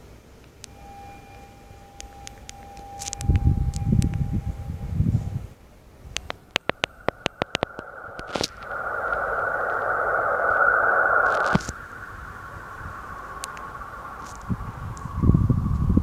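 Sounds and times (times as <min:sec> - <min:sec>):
electronic hum: 0:00.6 - 0:05.1, 0:06.0 - 0:16.0
steady hiss: 0:05.6 - 0:16.0
sharp clicks: 0:06.2 - 0:15.1.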